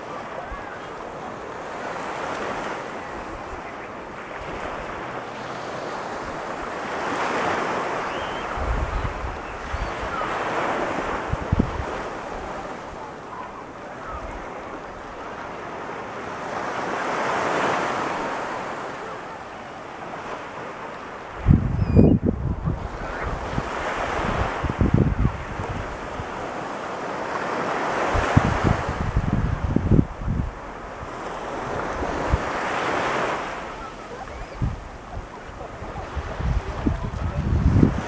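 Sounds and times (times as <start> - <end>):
surf breaking on beach: 0.0 - 38.0
wind buffeting microphone: 8.1 - 15.4, 21.3 - 26.6, 28.0 - 38.0.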